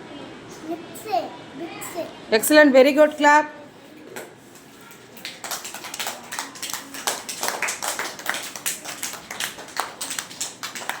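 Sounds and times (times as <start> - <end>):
children clapping: 4.9 - 11.0.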